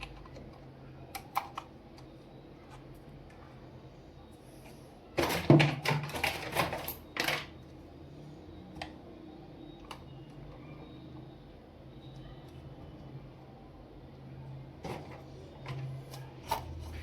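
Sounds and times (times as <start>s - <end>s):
plastic toys clattering: 5.2s - 7.5s.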